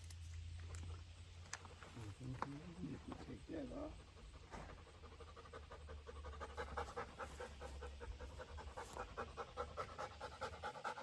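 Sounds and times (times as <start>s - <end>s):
dog panting: 4.0s - 11.0s.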